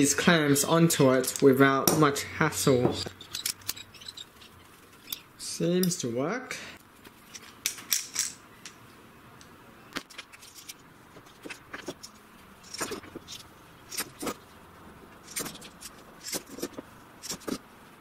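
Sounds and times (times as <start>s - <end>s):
metal clamps clicking: 3.1s - 4.2s.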